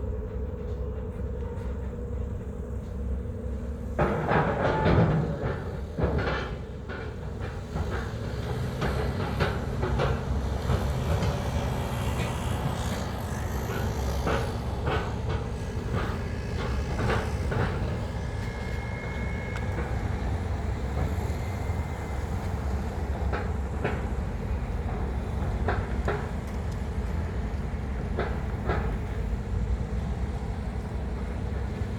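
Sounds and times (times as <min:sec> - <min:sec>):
ferry engine rumbling: 0:00.0 - 0:31.9
knocks and clanks: 0:03.9 - 0:20.0.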